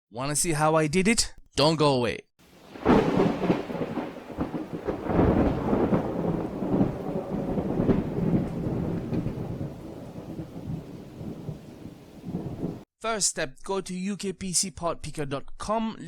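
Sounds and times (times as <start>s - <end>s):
steady rain: 2.4s - 12.9s
rumbling thunder: 2.5s - 12.9s.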